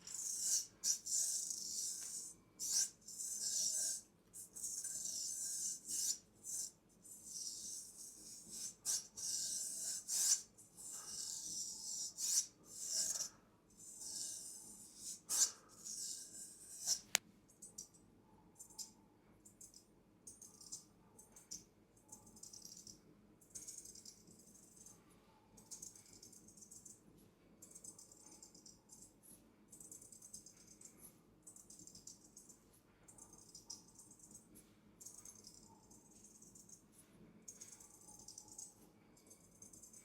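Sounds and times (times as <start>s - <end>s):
straight razor shaving strokes: 0.1s - 17.2s.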